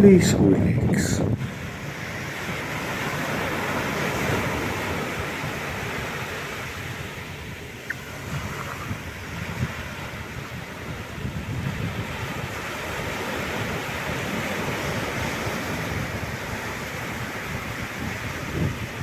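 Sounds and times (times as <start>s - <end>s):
surf breaking on a beach: 0.0s - 19.0s.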